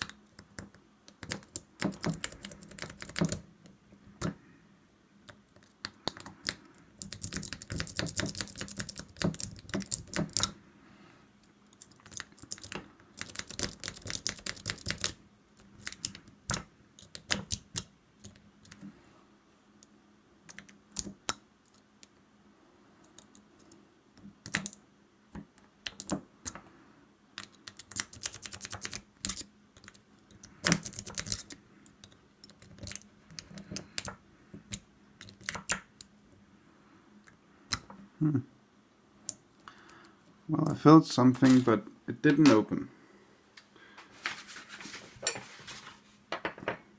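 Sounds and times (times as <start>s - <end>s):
lock pick clicking and scraping: 0.0s - 4.4s, 11.6s - 18.8s, 27.4s - 36.1s.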